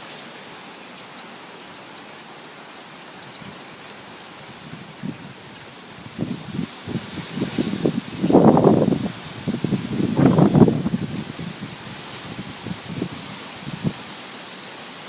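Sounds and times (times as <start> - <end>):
heavy rain falling: 0.0 - 15.0
wind gusts buffeting microphone: 3.2 - 14.1.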